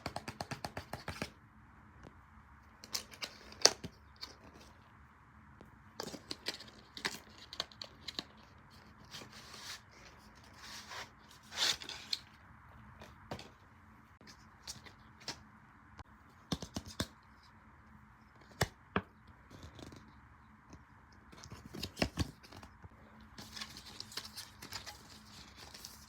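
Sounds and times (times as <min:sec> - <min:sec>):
material crinkling and rustling: 0:23.4 - 0:26.0.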